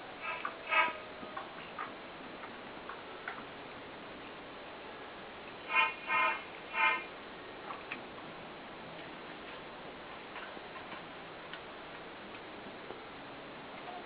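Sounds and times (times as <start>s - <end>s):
steady hiss: 0.0s - 14.0s
high squeak: 0.2s - 1.0s.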